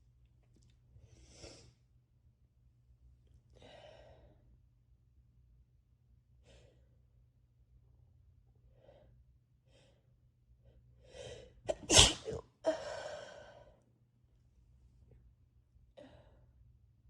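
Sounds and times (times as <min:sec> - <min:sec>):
woman sneezing: 0:11.7 - 0:12.5.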